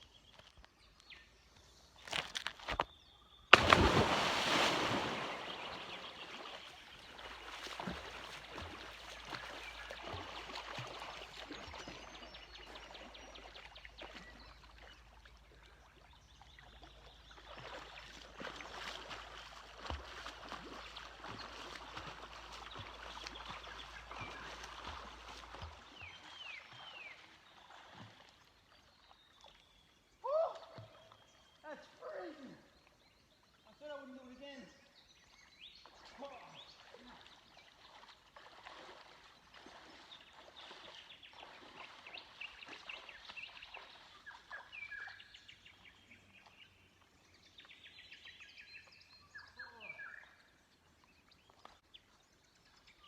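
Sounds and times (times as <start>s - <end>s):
person plunging into water: 3.5s - 11.2s
water sloshing: 3.5s - 28.5s, 35.8s - 44.7s.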